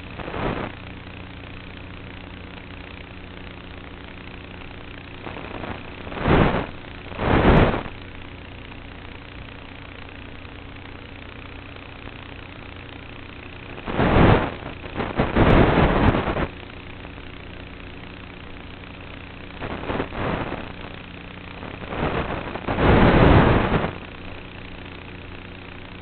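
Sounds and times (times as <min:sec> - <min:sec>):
model airplane motor hum: 0:00.0 - 0:26.0
rushes of wind noise: 0:06.1 - 0:07.9, 0:13.9 - 0:16.5, 0:21.9 - 0:24.0.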